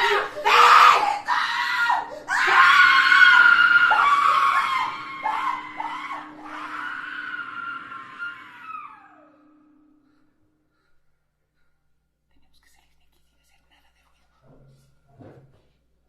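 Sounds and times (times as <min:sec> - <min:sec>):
long high-pitched scream: 0:00.0 - 0:10.2
faint low drone: 0:02.2 - 0:11.9.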